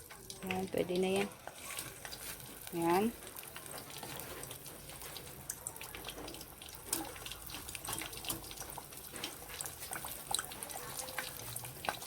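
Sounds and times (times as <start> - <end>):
potatoes sizzling in hot oil: 0.0 - 12.0.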